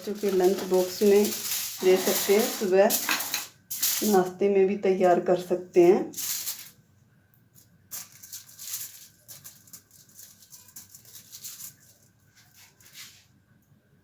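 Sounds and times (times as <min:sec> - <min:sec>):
wrapping material rustling: 0:00.0 - 0:04.3, 0:05.8 - 0:06.8, 0:07.6 - 0:13.4.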